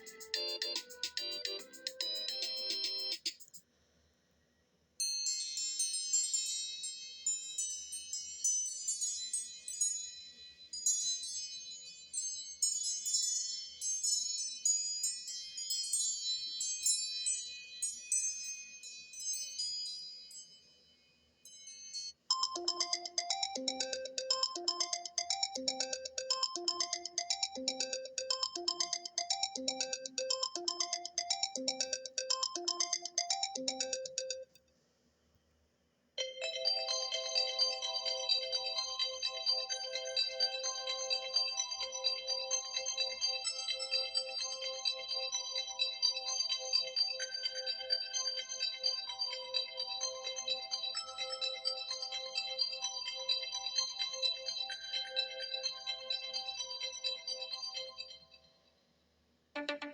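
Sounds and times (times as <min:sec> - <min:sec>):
low repeating ringtone: 0:00.0 - 0:03.4, 0:22.3 - 0:34.5, 0:59.6 - 0:59.9
high tinkling ringtone: 0:00.0 - 0:03.5, 0:21.5 - 0:34.6.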